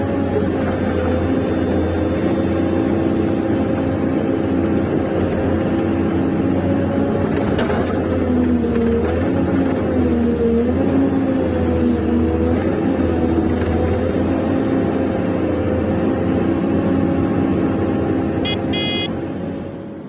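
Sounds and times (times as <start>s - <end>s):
short electronic beeps: 18.4s - 19.1s.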